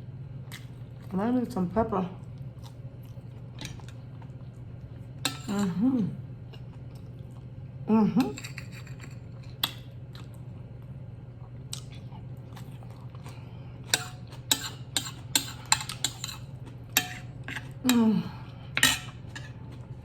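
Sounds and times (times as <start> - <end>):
steady low hum: 0.0 - 20.0
cutlery scraping a plate: 5.3 - 5.7, 8.2 - 9.8, 13.9 - 18.0, 18.8 - 19.7.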